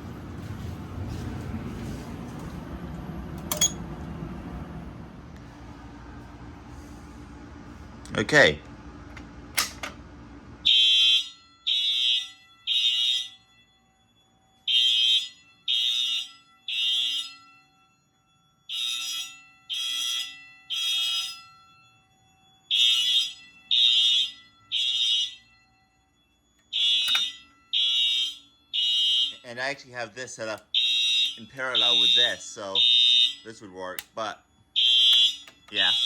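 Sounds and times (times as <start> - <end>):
fire alarm horn blasts: 10.6 - 36.0.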